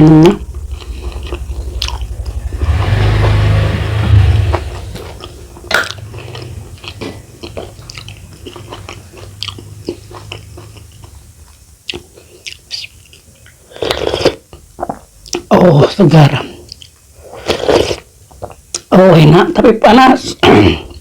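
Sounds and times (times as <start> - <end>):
person chewing: 5.2 - 15.5, 16.4 - 18.9.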